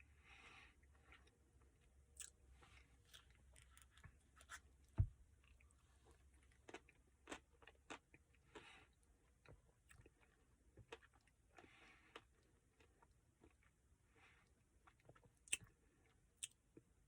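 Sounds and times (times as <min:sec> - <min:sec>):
person chewing: 0:02.2 - 0:04.6, 0:05.4 - 0:13.8
low thump: 0:05.0 - 0:05.2.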